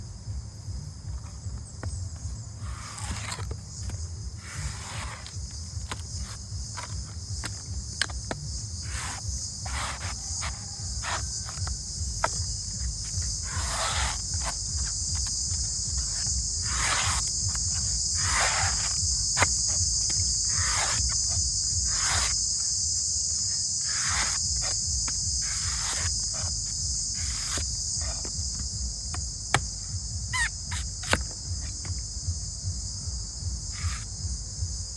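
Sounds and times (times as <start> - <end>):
high chirring like crickets: 0.0 - 34.9
knife cutting coconut husk: 2.6 - 32.0.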